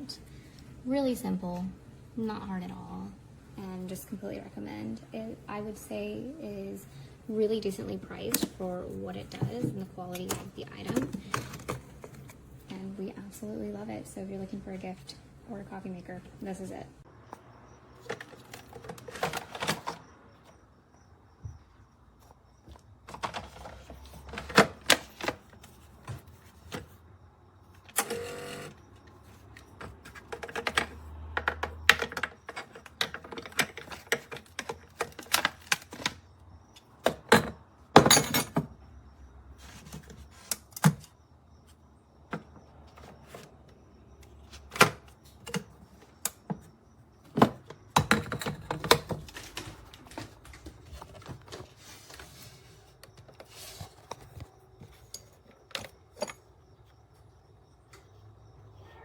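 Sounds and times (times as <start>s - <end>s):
hard objects clicking and knocking: 9.2s - 12.7s, 29.5s - 38.8s, 44.2s - 52.2s.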